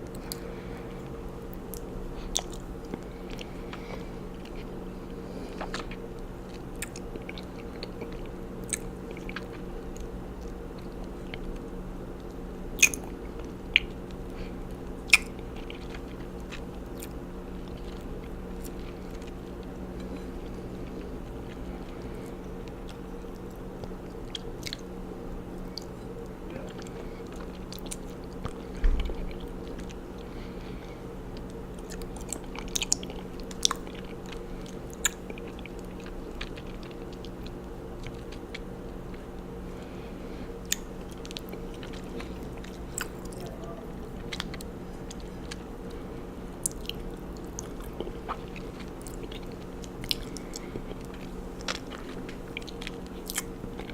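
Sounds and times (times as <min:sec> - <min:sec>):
chewing honeycomb: 0:00.0 - 0:53.9
steady low hum: 0:00.0 - 0:53.9.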